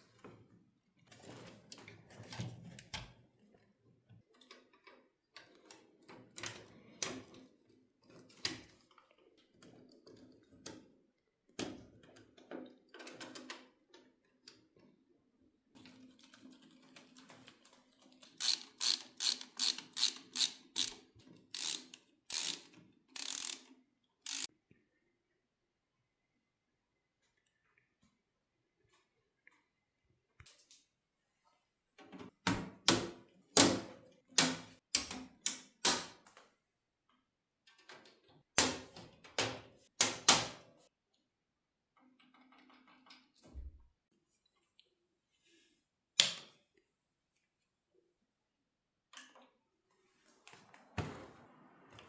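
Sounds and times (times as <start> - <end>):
parts clicking and rattling: 18.1 - 24.5
ratcheting clicks: 18.2 - 24.5.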